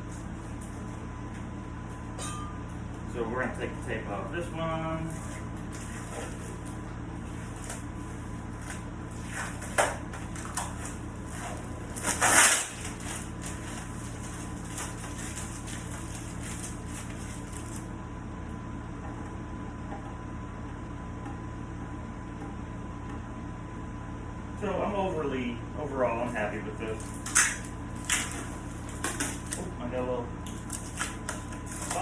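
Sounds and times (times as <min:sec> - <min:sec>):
steady shop hum: 0:00.0 - 0:32.0
tape peeling and crackling: 0:05.1 - 0:17.9, 0:26.9 - 0:29.7, 0:30.5 - 0:32.0.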